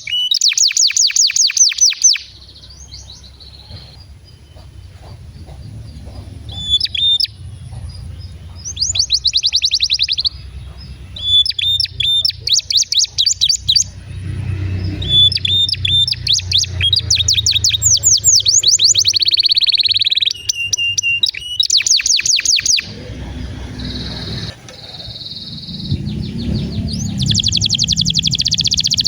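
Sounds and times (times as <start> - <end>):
canary singing trills: 0.0 - 29.0
steady low hum: 2.2 - 19.4, 22.7 - 29.0.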